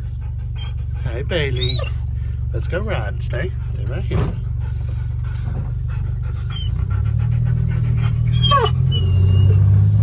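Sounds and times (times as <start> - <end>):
dog panting: 0.0 - 9.5
vehicle engine hum: 0.0 - 10.0.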